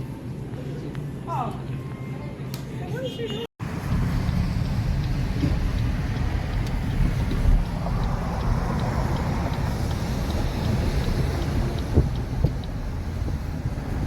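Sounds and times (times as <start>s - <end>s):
car road and engine rumble: 3.6s - 14.0s
faint regular ticks: 4.2s - 13.0s.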